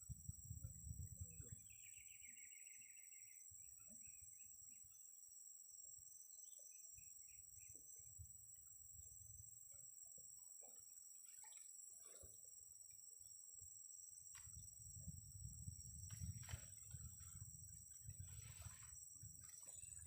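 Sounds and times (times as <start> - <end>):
low wind or handling rumble: 0.0 - 1.7, 14.4 - 20.0
faint bird or insect chirps: 0.0 - 20.0
high insect drone: 0.0 - 20.0.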